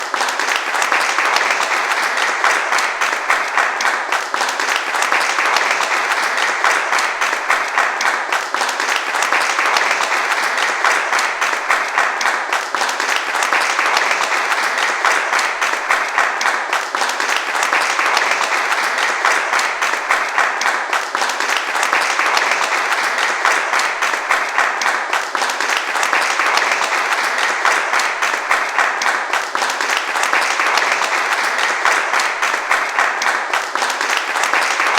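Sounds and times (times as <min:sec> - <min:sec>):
crowd applause: 0:00.0 - 0:34.9.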